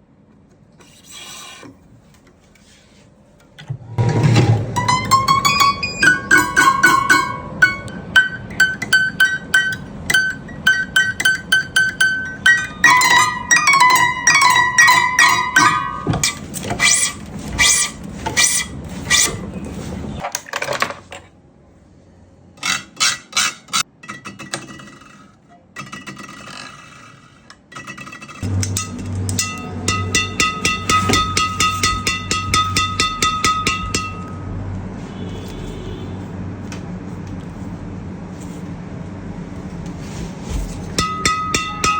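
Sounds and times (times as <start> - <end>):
plucked string melody: 4.0 - 16.6, 28.4 - 34.5.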